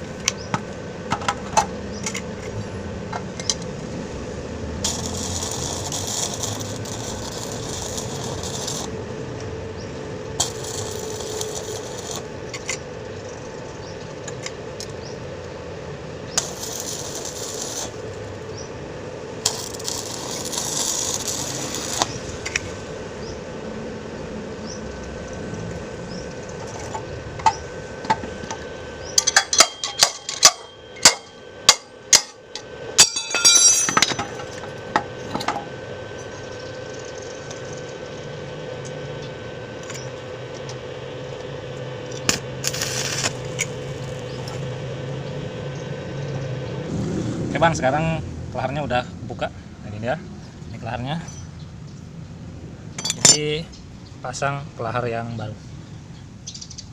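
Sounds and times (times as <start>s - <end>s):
metal tools clinking and scraping: 29.2s - 32.4s, 33.0s - 35.6s, 53.0s - 53.6s.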